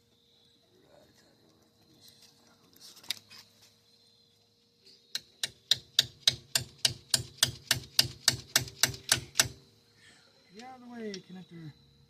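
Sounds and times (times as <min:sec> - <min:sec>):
hammer striking metal: 0:05.4 - 0:09.6.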